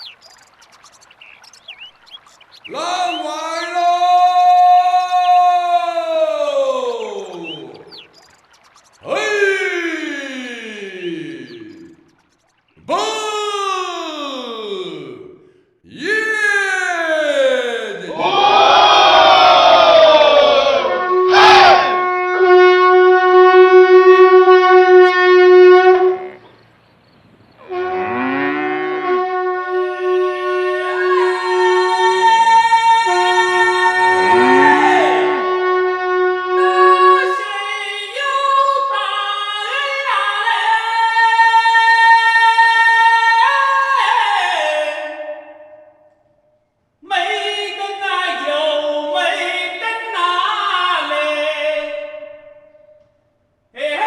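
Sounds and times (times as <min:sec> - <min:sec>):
sliding falling calls: 0:00.0 - 0:14.9, 0:30.7 - 0:37.9
unaccompanied choir singing: 0:18.1 - 0:21.9, 0:30.9 - 0:35.7
ox horns blowing held notes: 0:20.2 - 0:26.6, 0:27.6 - 0:37.9.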